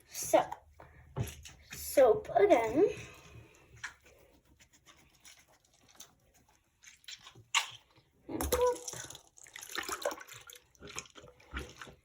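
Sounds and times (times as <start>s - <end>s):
squishy toy squelching: 3.8s - 9.4s.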